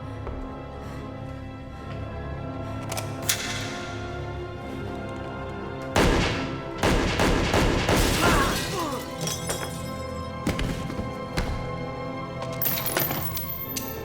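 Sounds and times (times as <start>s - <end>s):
film music: 0.0s - 14.0s
glass shattering: 8.0s - 10.4s, 12.6s - 14.0s.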